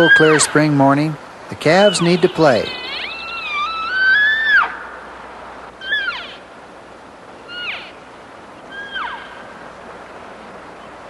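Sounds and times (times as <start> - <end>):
elk mewing calls: 0.0 - 0.8, 1.6 - 5.1, 5.7 - 6.6, 7.4 - 9.7.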